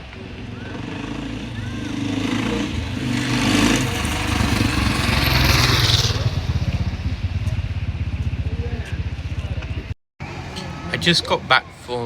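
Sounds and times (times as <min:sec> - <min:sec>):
vehicle engine running: 0:00.2 - 0:10.0.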